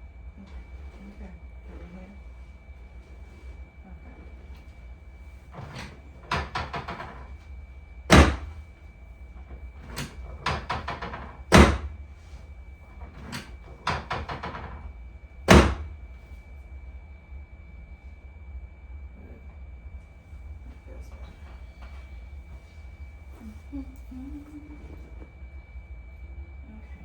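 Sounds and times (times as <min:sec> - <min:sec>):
loud clunk: 0:05.5 - 0:07.5, 0:08.1 - 0:08.7, 0:09.3 - 0:14.9, 0:15.5 - 0:16.0.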